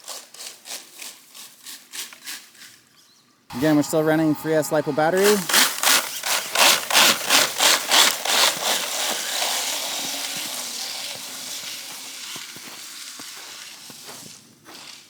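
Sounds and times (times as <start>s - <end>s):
footsteps crunching in slushy snow: 3.5s - 15.0s
steady hiss: 3.5s - 15.0s.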